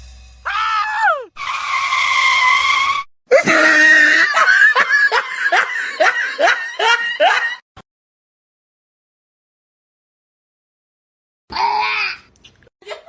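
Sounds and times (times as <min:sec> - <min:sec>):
short falling cries: 0:00.5 - 0:01.3
hoarse scream: 0:00.5 - 0:04.4.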